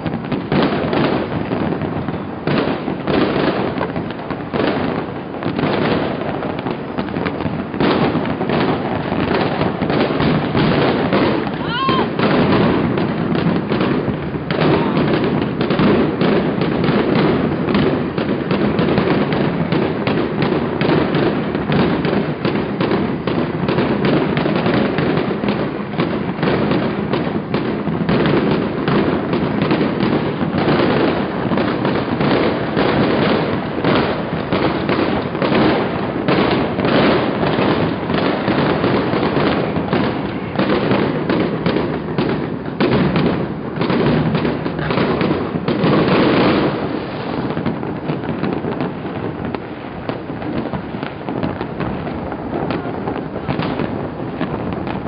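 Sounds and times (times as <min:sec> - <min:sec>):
fireworks and firecrackers banging: 0:00.0 - 0:55.0.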